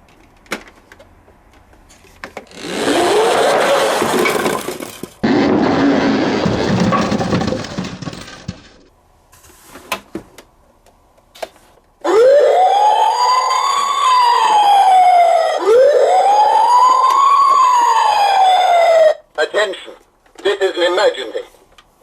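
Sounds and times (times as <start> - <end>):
toy siren wailing: 12.1 - 19.2.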